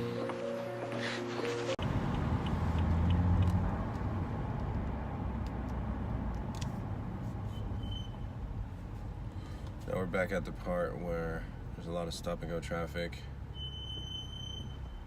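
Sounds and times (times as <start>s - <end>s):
car engine and road rumble: 0.9s - 15.0s
brakes squealing: 7.2s - 10.0s, 11.2s - 15.0s.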